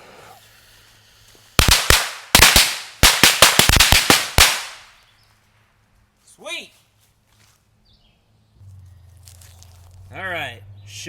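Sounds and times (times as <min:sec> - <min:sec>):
firecrackers banging: 0:01.4 - 0:05.0.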